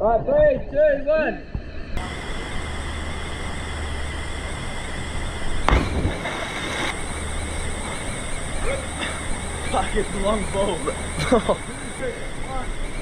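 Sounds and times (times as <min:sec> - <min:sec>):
rush of falling water: 0:02.0 - 0:12.8
person splashing into water: 0:05.7 - 0:07.0.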